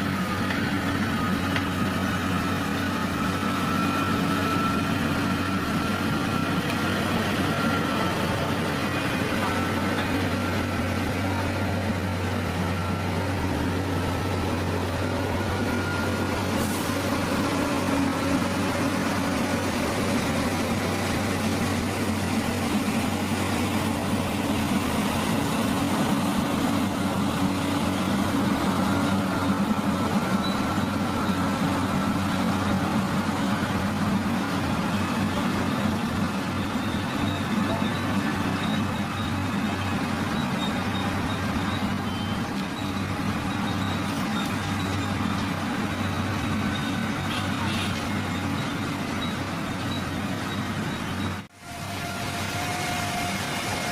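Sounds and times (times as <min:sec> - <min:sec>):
heavy machinery engine droning: 0:00.0 - 0:53.9.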